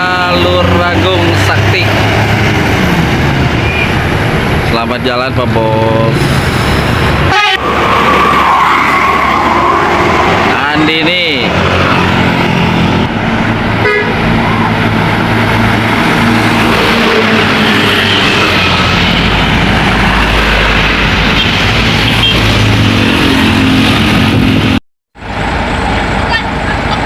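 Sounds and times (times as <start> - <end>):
road noise: 0.0 - 27.0
bus engine running: 9.9 - 27.0
horn toot: 13.8 - 14.3.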